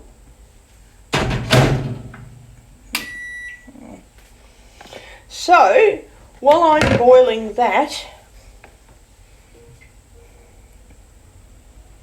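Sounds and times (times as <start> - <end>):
loud clunk and clatter: 1.2 - 2.6.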